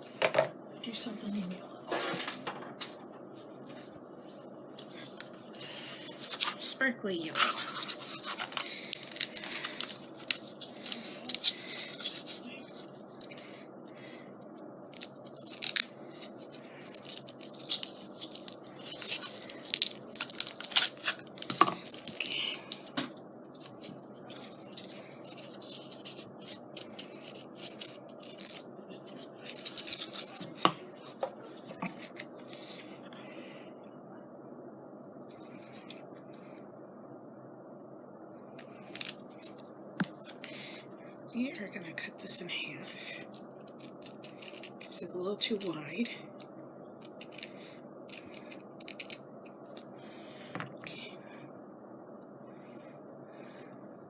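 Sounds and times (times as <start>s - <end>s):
steady background hiss: 0.0s - 54.0s
paper rustling and crinkling: 4.8s - 13.4s, 15.0s - 32.3s.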